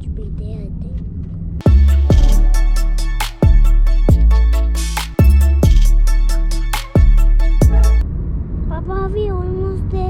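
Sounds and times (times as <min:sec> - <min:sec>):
electronic music with heavy beat: 0:01.6 - 0:08.0
booming bass drum hits: 0:01.7 - 0:06.1.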